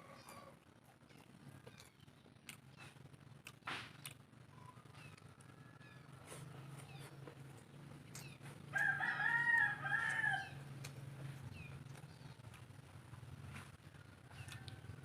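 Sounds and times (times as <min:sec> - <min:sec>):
rooster crowing: 0:05.3 - 0:06.3, 0:08.7 - 0:10.7.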